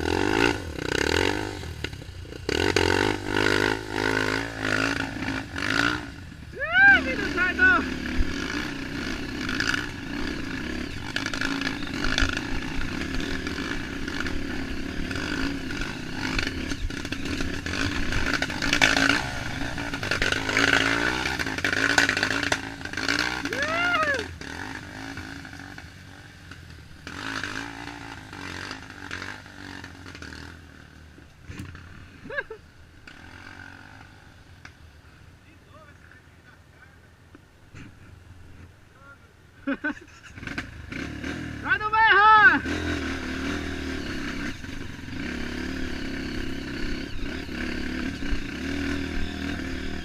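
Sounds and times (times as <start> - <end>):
dirt bike engine revving: 0.0 - 35.2, 39.6 - 50.0.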